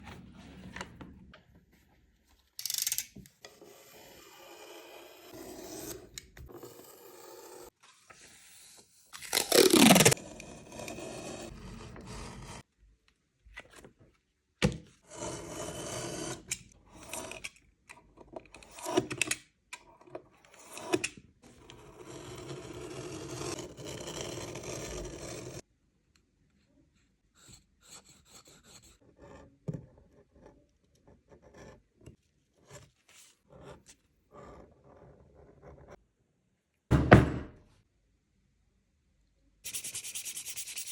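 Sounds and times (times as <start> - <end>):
tools scraping leather: 9.2 - 12.6.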